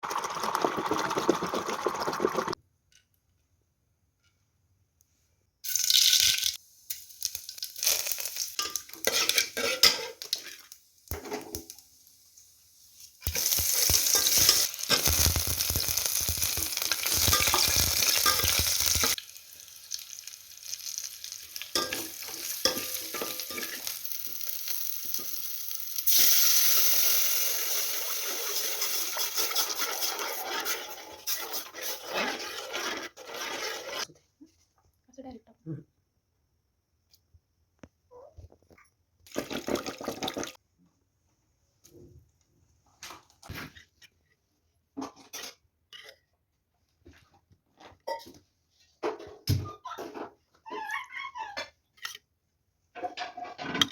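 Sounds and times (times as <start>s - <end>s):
food sizzling in a pan: 5.6s - 34.1s
utensil scraping a pan: 8.6s - 10.6s, 17.0s - 19.2s, 28.5s - 34.1s.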